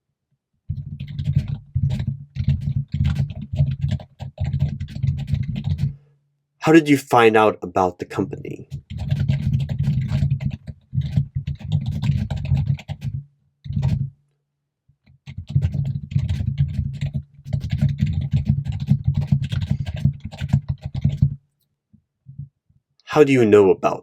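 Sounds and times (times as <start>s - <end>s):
fast typing on computer keyboard: 0.7s - 6.0s, 8.6s - 14.1s, 15.2s - 21.4s.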